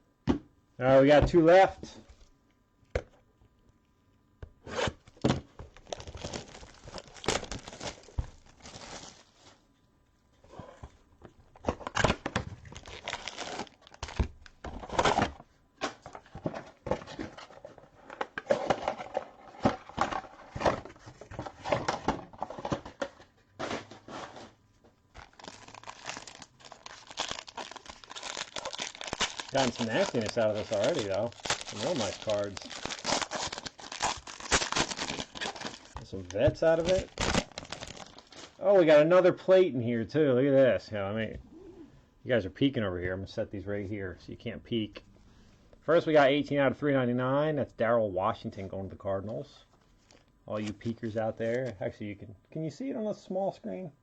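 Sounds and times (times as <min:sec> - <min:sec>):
plastic wrapper ripping and crinkling: 0:05.7 - 0:09.6, 0:11.7 - 0:15.3, 0:25.1 - 0:38.6.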